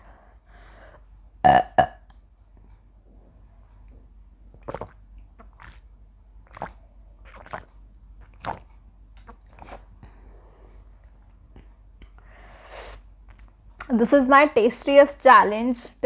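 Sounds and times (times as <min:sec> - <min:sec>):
person gulping juice: 0:01.4 - 0:02.2, 0:03.8 - 0:13.9.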